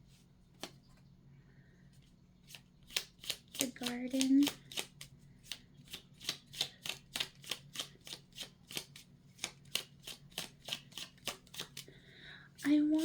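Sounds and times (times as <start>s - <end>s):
cards being shuffled: 0.6s - 0.8s, 2.4s - 11.9s.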